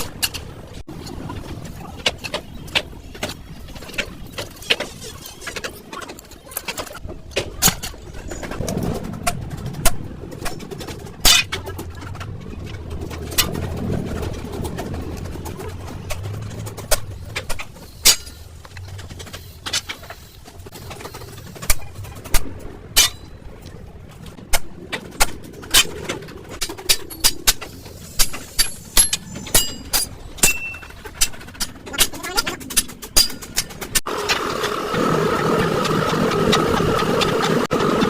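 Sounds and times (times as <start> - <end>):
low rumble: 7.0 - 33.1
metal knocks and clicks: 24.3 - 34.1.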